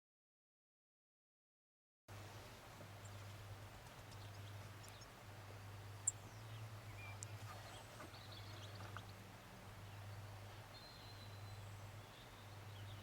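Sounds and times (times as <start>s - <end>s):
bird chirps: 6.0s - 9.2s, 9.9s - 13.0s.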